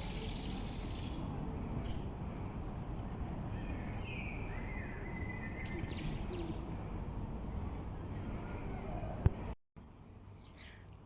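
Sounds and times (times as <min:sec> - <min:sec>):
bird chirps: 0:03.5 - 0:06.7, 0:10.4 - 0:10.9.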